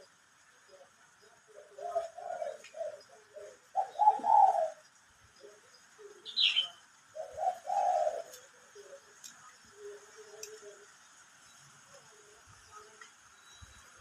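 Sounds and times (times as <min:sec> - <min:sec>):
dove cooing: 0:00.7 - 0:11.0.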